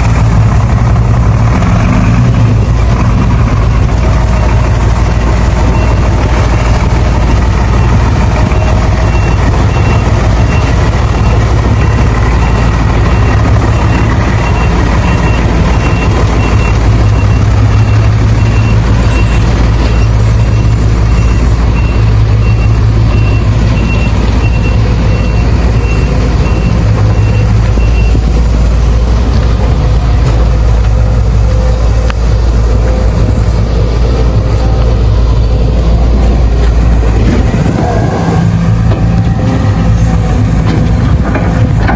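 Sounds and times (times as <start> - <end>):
heavy diesel engines running: 0.0 - 41.9
reversing alarm beeping: 5.6 - 28.6.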